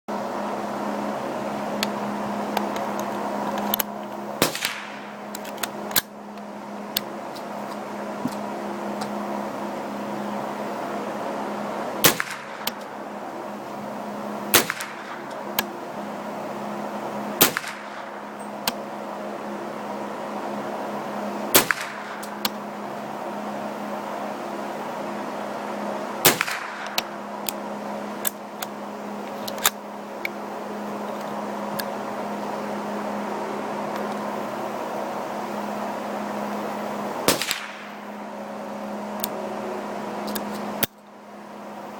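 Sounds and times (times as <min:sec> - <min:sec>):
steady hum: 0:00.1 - 0:41.9
rifle shots: 0:04.4 - 0:05.1, 0:12.0 - 0:12.6, 0:14.5 - 0:15.2, 0:17.4 - 0:18.1, 0:21.6 - 0:22.2, 0:26.2 - 0:26.9, 0:37.3 - 0:38.0.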